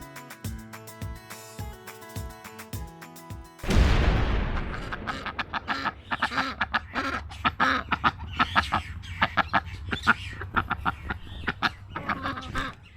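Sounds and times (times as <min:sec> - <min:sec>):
birds calling rapidly: 0:05.5 - 0:12.9.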